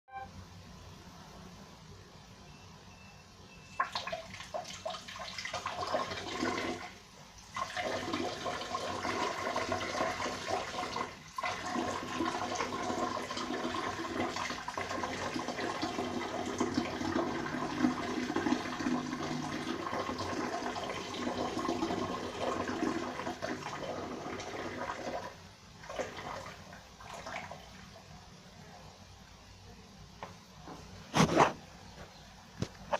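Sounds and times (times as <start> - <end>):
person urinating into toilet: 3.8 - 27.9.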